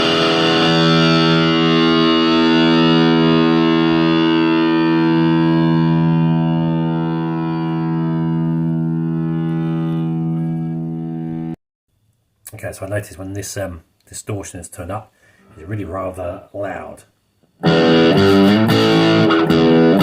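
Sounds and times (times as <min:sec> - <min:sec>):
distorted electric guitar chord: 0:00.0 - 0:11.6, 0:17.6 - 0:20.0.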